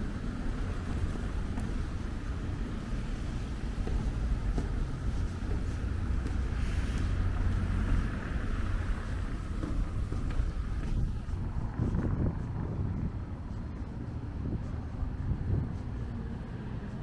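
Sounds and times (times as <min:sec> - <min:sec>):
low outdoor rumble: 0:00.0 - 0:17.0
wind buffeting microphone: 0:00.0 - 0:17.0.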